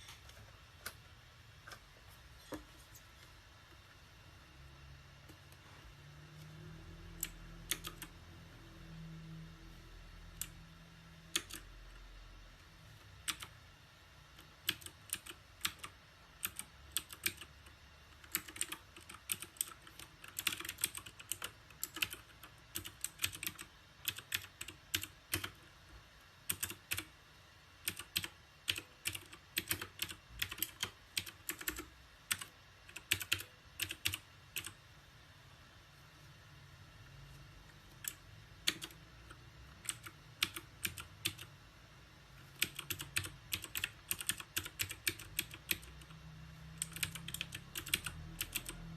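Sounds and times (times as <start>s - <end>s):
mechanical keyboard typing: 7.0s - 8.3s, 10.2s - 12.0s, 13.2s - 13.6s, 14.3s - 25.8s, 26.4s - 27.1s, 27.8s - 34.8s, 37.8s - 41.5s, 42.5s - 48.9s.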